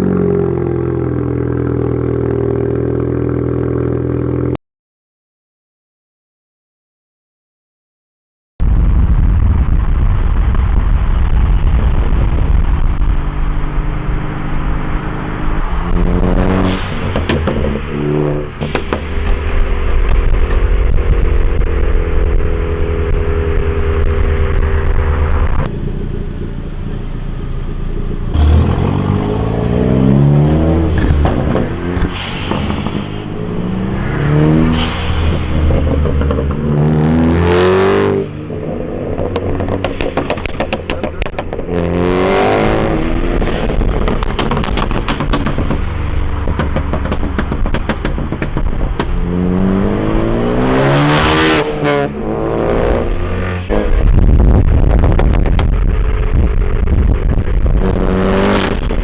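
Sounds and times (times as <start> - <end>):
exhaust pops and crackles: 8.6 - 14.6, 15.4 - 25.7, 29.5 - 51.9, 52.7 - 59.0
car engine revving: 9.9 - 59.0.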